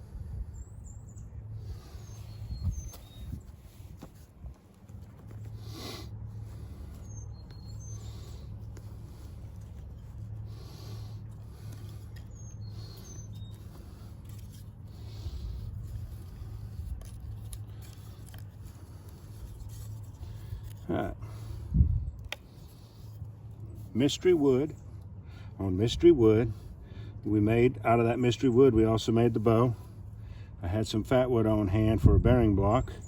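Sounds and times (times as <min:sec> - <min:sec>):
bird chirps: 0:00.5 - 0:03.4, 0:06.8 - 0:08.6, 0:12.2 - 0:14.1
wooden spindle grinding and squeaking: 0:06.4 - 0:21.5.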